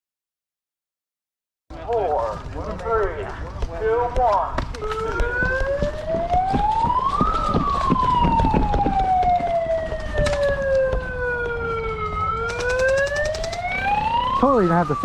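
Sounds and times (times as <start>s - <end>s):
scattered clicks and knocks: 2.7s - 13.7s
siren wailing: 4.7s - 15.0s.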